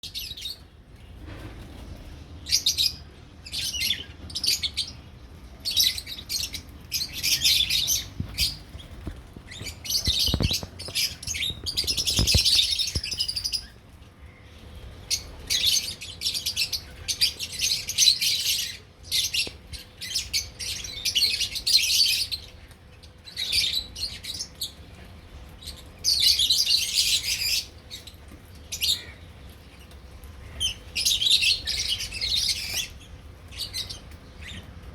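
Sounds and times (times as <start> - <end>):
birds chirping shrilly: 5.6 - 13.8.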